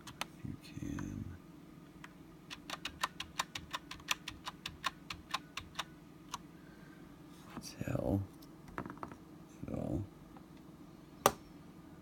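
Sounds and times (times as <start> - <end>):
mechanical keyboard clicks: 2.5 - 5.9.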